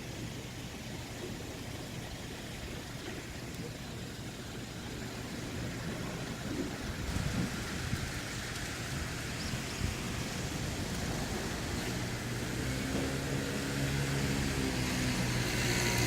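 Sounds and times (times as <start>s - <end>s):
low engine hum: 0.0s - 16.0s
wind buffeting microphone: 5.1s - 16.0s.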